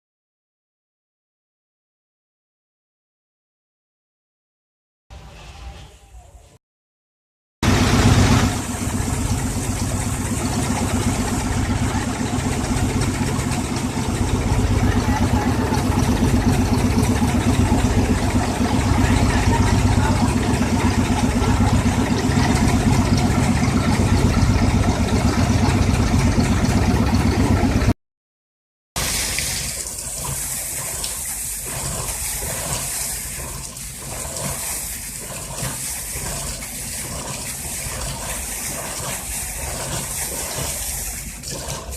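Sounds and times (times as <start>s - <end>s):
air and water gushing out: 7.6s - 26.8s, 29.0s - 41.9s
compressor engine running: 7.6s - 27.9s, 29.0s - 41.9s.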